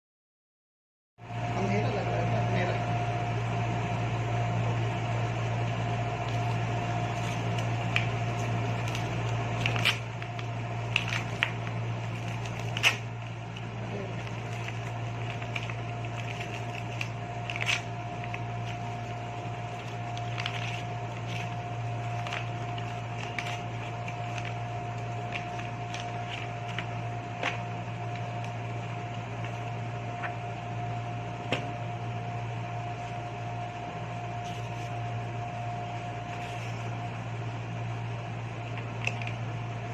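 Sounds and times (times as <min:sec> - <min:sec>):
low mechanical hum with whine: 0:01.2 - 0:39.9
book and packaging rustling: 0:05.6 - 0:30.3, 0:34.3 - 0:37.2, 0:38.6 - 0:39.4.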